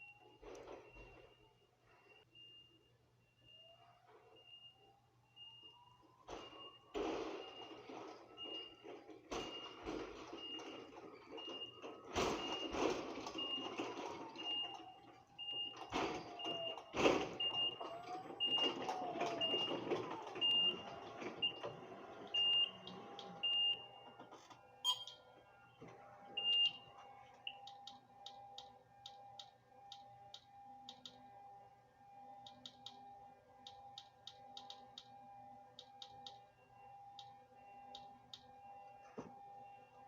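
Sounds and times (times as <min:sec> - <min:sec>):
short high electronic beeps: 0:24.9 - 0:25.2.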